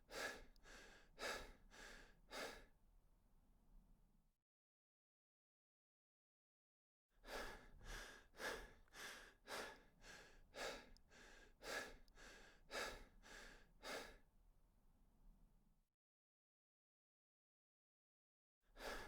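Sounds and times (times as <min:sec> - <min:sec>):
person breathing heavily: 0:07.3 - 0:14.2, 0:18.8 - 0:19.0.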